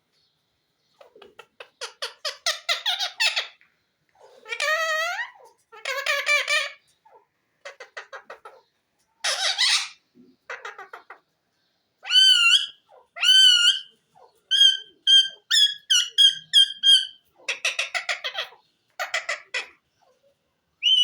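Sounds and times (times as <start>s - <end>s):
parakeet chatter and squawk: 0.9s - 11.3s, 12.0s - 21.0s
parakeet whistling: 14.5s - 17.2s, 20.8s - 21.0s.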